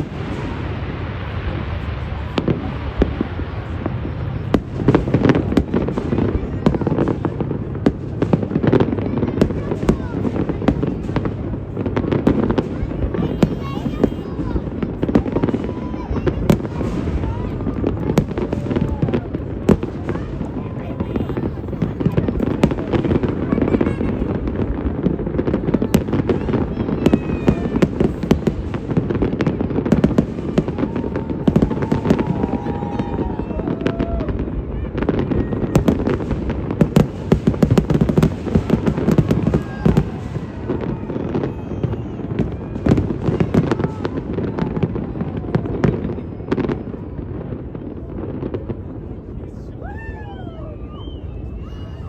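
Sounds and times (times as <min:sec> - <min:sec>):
fireworks sharp cracks: 0:00.0 - 0:48.8
fireworks bursts rumbling: 0:00.0 - 0:52.0
fireworks whistles: 0:08.4 - 0:44.8, 0:50.0 - 0:52.0.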